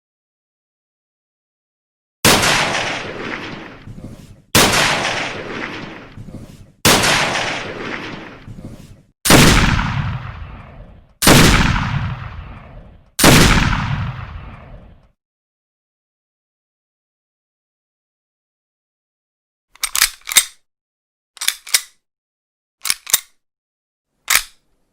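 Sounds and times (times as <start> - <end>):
gunshots with echoing tail: 2.2 - 15.0.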